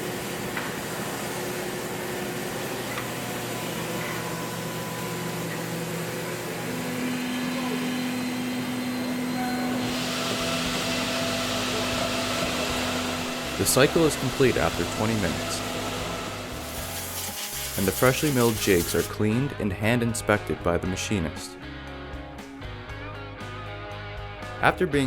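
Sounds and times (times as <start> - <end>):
milling machine whirring: 0.0 - 19.1
hiss: 16.6 - 19.1.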